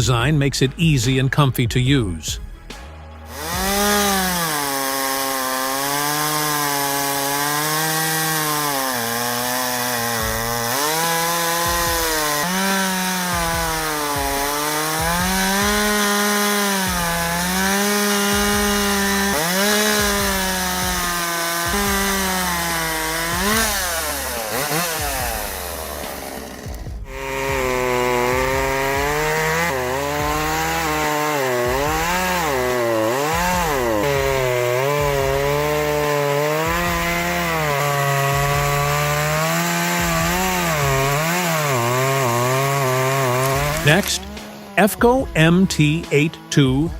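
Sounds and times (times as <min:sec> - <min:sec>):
chainsaw cutting wood: 0:02.5 - 0:46.9.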